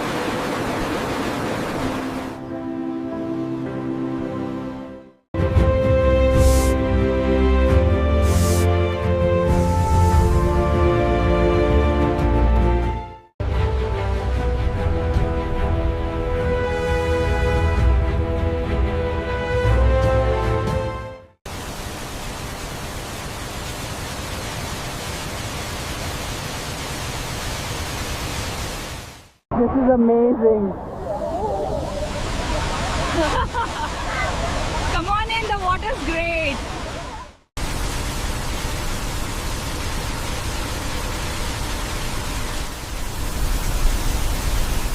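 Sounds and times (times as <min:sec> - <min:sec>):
waterfall roaring: 0:00.0 - 0:02.4, 0:31.8 - 0:44.9
background music: 0:02.3 - 0:21.3.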